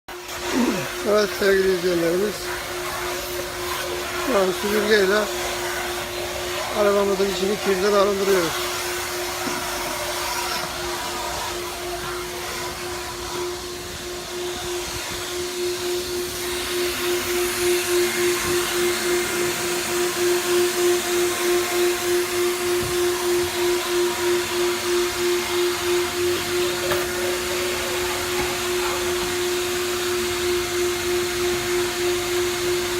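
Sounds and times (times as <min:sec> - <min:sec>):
vacuum cleaner running: 0:00.1 - 0:32.9.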